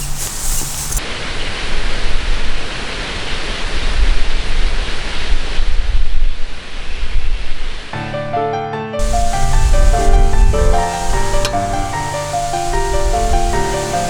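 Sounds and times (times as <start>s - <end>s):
wind buffeting microphone: 9.0s - 14.0s.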